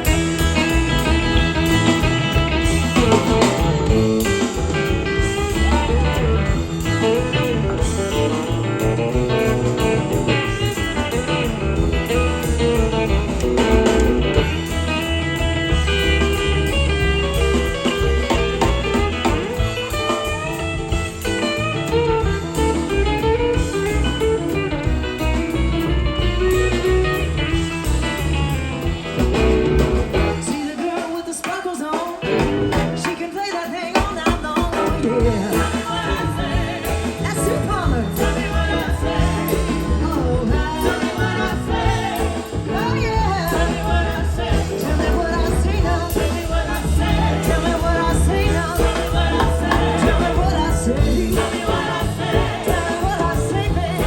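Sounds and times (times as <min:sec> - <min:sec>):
electric guitar solo: 0:00.0 - 0:30.8
live blues band playing: 0:00.0 - 0:54.0.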